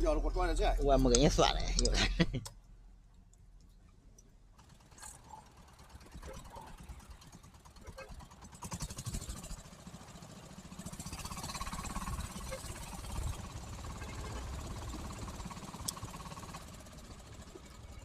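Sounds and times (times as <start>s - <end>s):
diesel engine pulsing: 4.4s - 18.0s.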